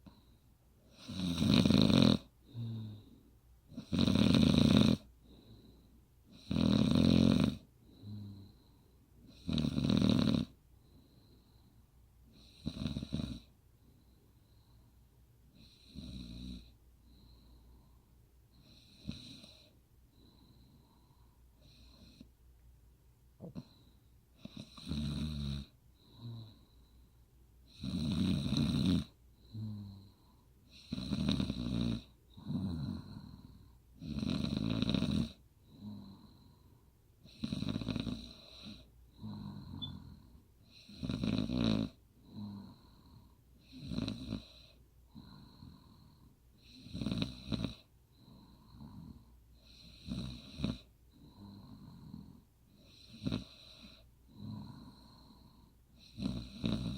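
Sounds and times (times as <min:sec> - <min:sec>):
woman snoring: 0:00.9 - 0:03.1, 0:03.7 - 0:05.1, 0:06.3 - 0:08.6, 0:09.3 - 0:10.6, 0:12.4 - 0:13.5, 0:15.6 - 0:16.8, 0:24.4 - 0:26.7, 0:27.7 - 0:36.6, 0:37.2 - 0:56.9.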